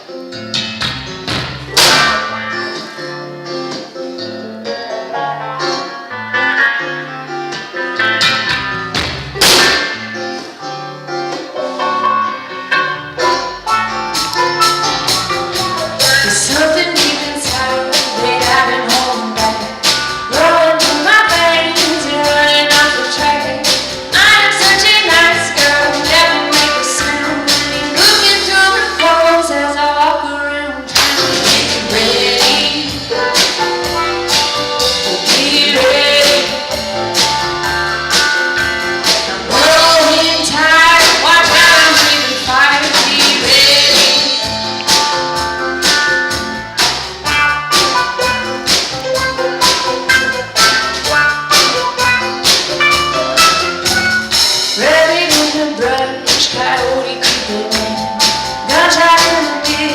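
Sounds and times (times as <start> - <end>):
band music: 0.0 - 59.9
banjo with wah-wah effect: 0.4 - 3.8, 11.3 - 29.4, 30.9 - 59.9
woman singing: 16.2 - 33.6, 34.8 - 36.8, 39.3 - 44.5, 54.7 - 59.9.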